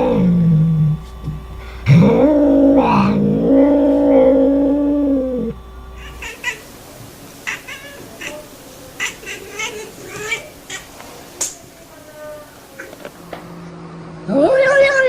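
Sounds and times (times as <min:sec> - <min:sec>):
cat yowling: 0:01.9 - 0:06.8, 0:07.4 - 0:10.9.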